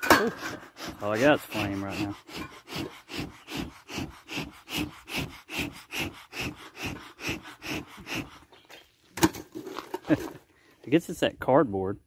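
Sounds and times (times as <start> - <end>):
bellows puffing air: 0.0 - 8.5.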